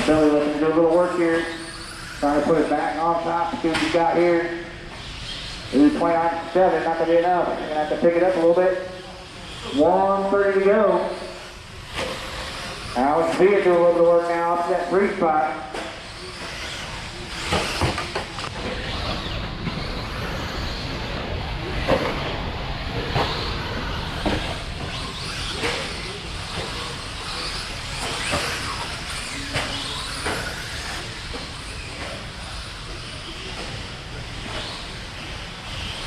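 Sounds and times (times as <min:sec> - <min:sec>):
toy truck motors and tyres: 0:00.0 - 0:03.2, 0:04.9 - 0:05.8, 0:09.2 - 0:13.4, 0:16.0 - 0:36.0.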